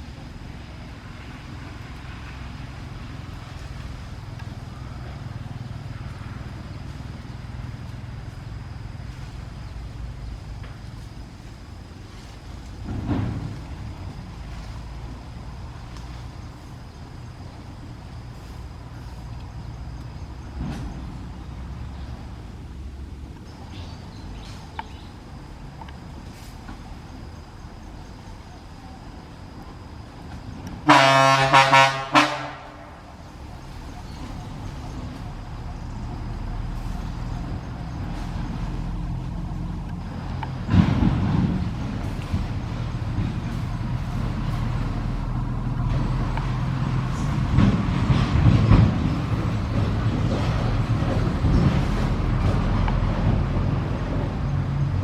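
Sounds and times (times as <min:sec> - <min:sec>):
engine running low rumble: 0:00.0 - 0:55.0
vehicle horn honking: 0:30.9 - 0:33.0.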